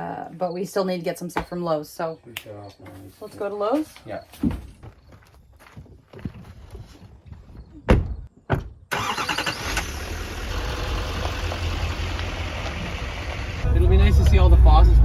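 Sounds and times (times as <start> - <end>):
vehicle engine rumble: 8.9 - 15.0.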